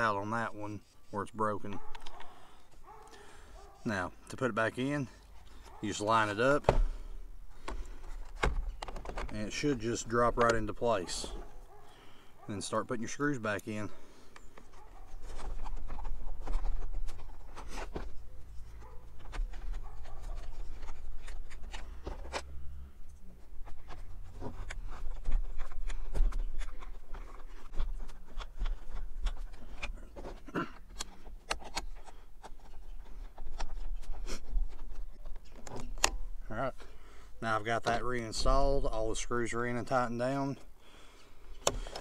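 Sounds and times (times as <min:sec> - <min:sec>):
screwdriving clicks and scraping: 0:00.8 - 0:03.2, 0:07.6 - 0:11.9, 0:13.1 - 0:36.9, 0:41.5 - 0:42.0.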